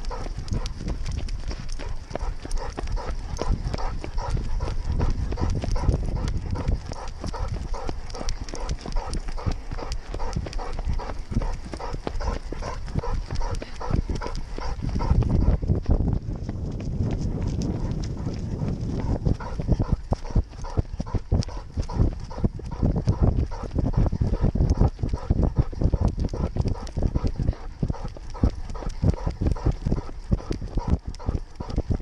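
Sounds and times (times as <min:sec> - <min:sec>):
low rumble: 0:00.0 - 0:27.1
dog panting: 0:00.0 - 0:32.0.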